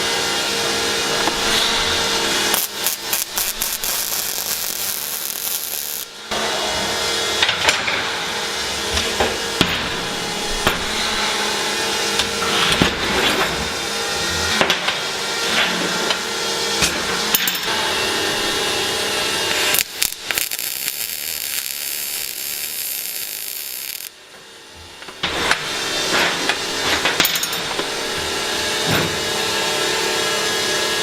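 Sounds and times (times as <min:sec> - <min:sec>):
welding arc hissing and crackling: 0:01.0 - 0:06.1, 0:18.0 - 0:24.2.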